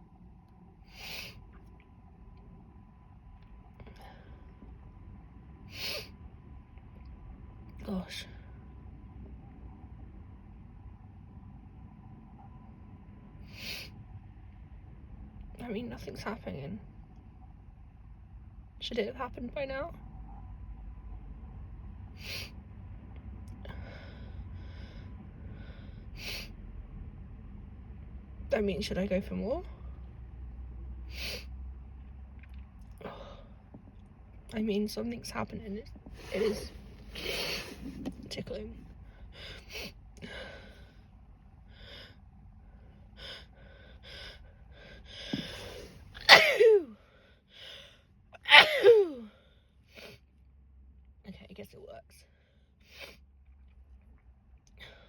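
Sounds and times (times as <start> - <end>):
soft breathing: 3.8 - 4.9, 23.6 - 26.6, 36.0 - 38.2, 38.8 - 46.2, 47.0 - 48.2, 52.2 - 53.3
woman sneezing loudly: 46.2 - 47.0, 48.4 - 49.3.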